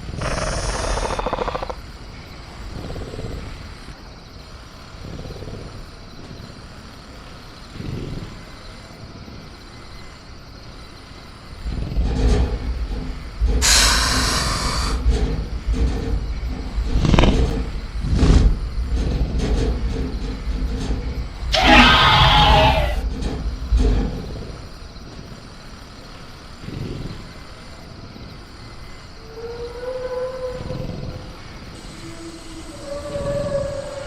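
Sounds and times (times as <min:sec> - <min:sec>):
harsh rattling noise: 0:00.0 - 0:01.8, 0:11.6 - 0:25.0
rasping growl: 0:00.0 - 0:01.8, 0:02.5 - 0:03.7, 0:11.6 - 0:24.8, 0:26.6 - 0:27.6, 0:29.2 - 0:34.0
low creature rumbling: 0:00.0 - 0:04.0, 0:11.5 - 0:25.0, 0:29.1 - 0:34.0.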